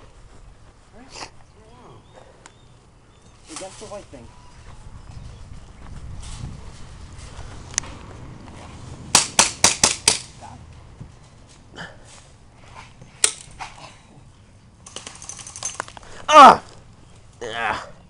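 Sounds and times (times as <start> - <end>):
airsoft gun shots: 9.1 - 10.3.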